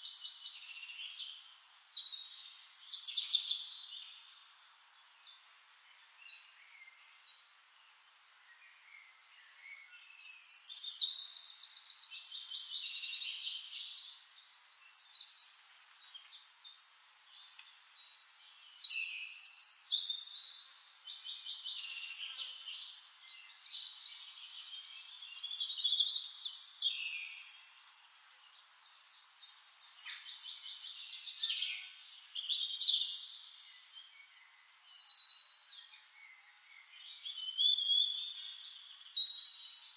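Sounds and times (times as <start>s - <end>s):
songbird trills and whistles: 8.6s - 28.1s, 28.9s - 39.9s.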